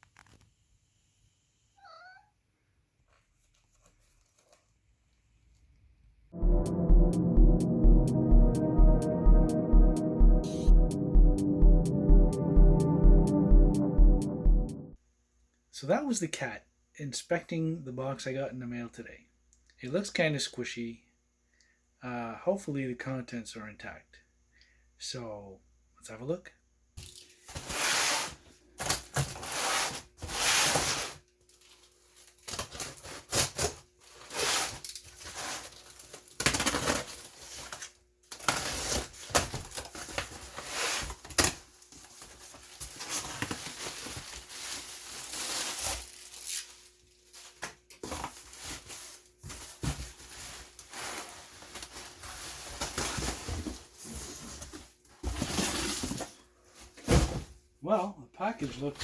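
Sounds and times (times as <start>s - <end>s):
packaging tearing and rustling: 31.5s - 53.0s.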